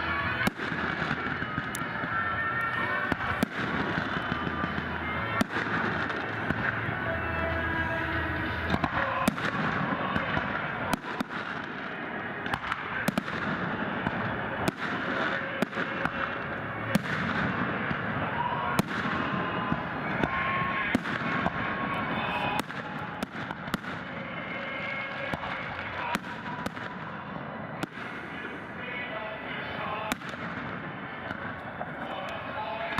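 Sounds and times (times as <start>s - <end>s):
fireworks bursting bangs: 0.0s - 32.9s.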